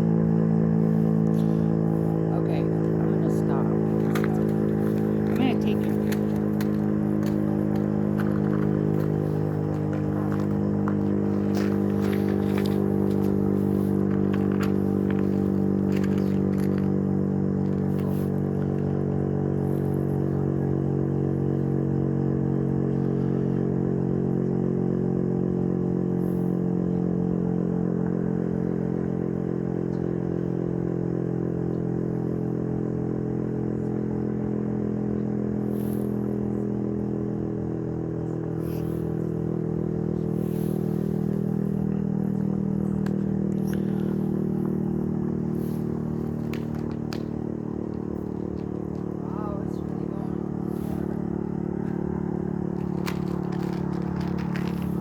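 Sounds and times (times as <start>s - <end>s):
tornado warning siren low tone: 0.0s - 22.7s.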